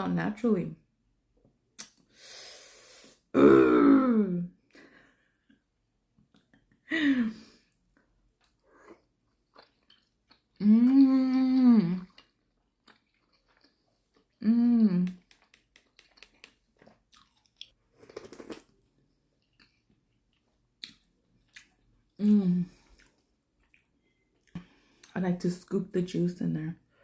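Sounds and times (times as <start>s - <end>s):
mouth clicks from eating: 14.9s - 16.6s.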